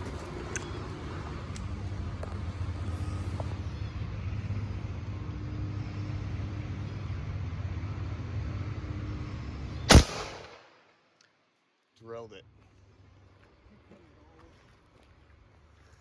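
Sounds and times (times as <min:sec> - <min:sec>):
low engine-like hum: 0:00.0 - 0:10.5, 0:12.0 - 0:16.0
air rifle shot: 0:09.9 - 0:10.8.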